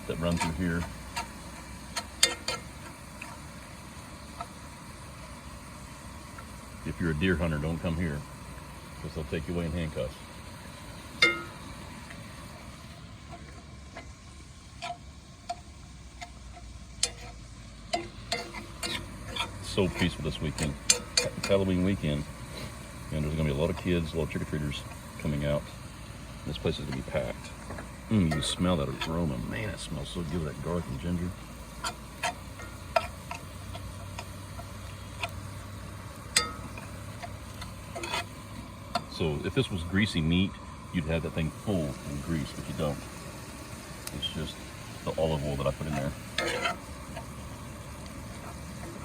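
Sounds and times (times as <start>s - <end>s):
low steady hum: 0.0s - 49.0s
meat sizzling in a pan: 0.0s - 49.0s
utensil tapping a pan: 14.8s - 22.3s, 26.5s - 39.2s.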